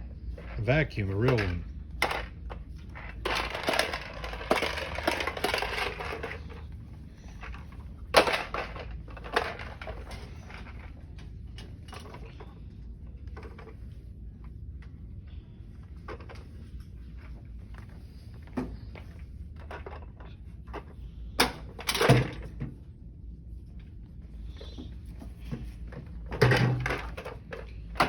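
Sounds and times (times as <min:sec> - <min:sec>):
vacuum cleaner rattling: 0:00.4 - 0:11.0, 0:26.0 - 0:28.0.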